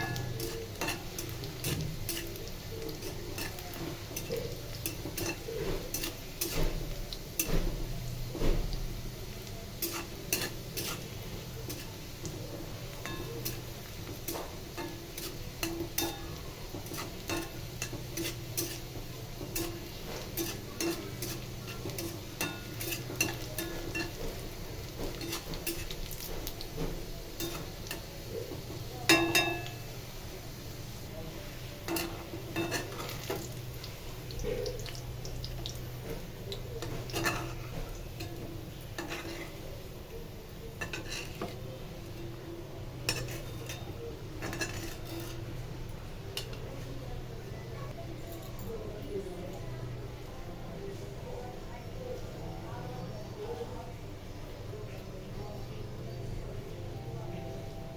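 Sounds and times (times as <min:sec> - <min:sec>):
utensil scraping a pan: 0:00.0 - 0:08.7, 0:09.7 - 0:29.8, 0:40.8 - 0:42.4, 0:43.1 - 0:45.6
utensil clatter: 0:00.0 - 0:30.0.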